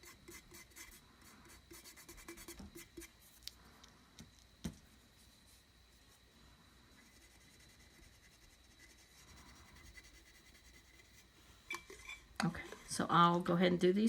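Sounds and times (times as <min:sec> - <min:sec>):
cotton swab rubbing surface: 0:00.0 - 0:03.5, 0:07.0 - 0:11.4.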